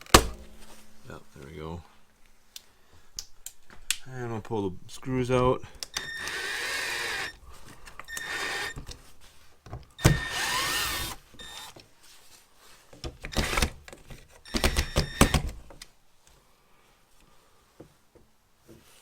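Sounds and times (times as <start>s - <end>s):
cordless drill whining: 5.9s - 9.0s, 10.0s - 11.8s, 13.3s - 13.8s, 14.5s - 15.5s.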